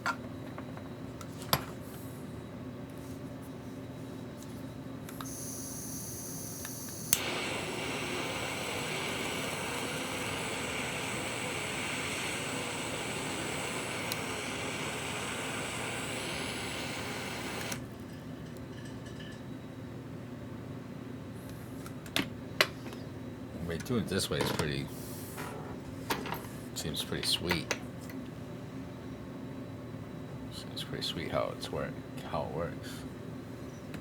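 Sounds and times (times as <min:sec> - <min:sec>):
electric blower whirring: 0:05.2 - 0:17.8.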